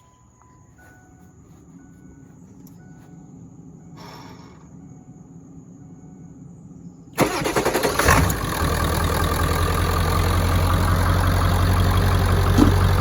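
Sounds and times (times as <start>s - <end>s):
starter motor cranking: 7.2s - 8.8s
diesel engine idling: 7.2s - 13.0s.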